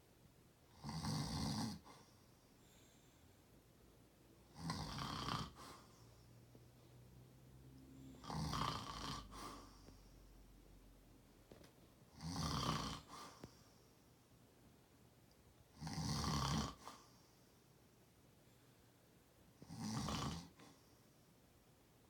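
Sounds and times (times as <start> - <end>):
person snoring: 4.5 - 5.9, 7.9 - 9.9, 12.1 - 13.4, 15.8 - 17.0, 19.6 - 20.7.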